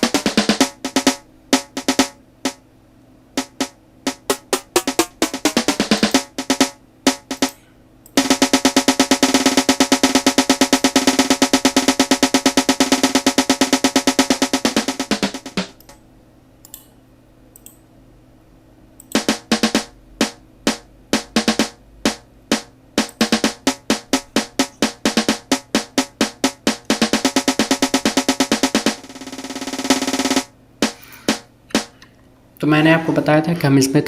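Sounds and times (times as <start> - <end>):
snare drum roll: 0.0 - 2.6, 3.4 - 7.5, 8.2 - 15.8, 19.2 - 31.9.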